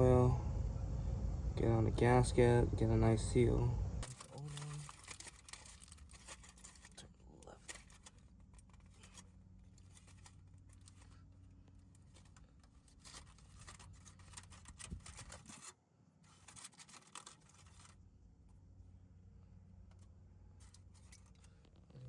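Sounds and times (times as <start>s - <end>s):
faint low hum: 0.0s - 22.0s
scratching and clicking handling noises: 4.0s - 18.8s, 19.6s - 22.0s.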